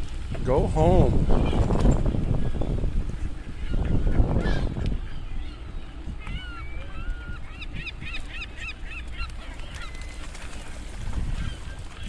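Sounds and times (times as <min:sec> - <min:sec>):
geese honking: 0:03.2 - 0:12.0.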